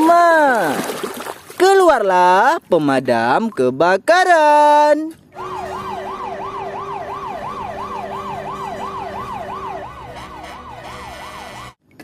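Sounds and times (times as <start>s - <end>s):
toy siren wailing: 5.4s - 11.8s.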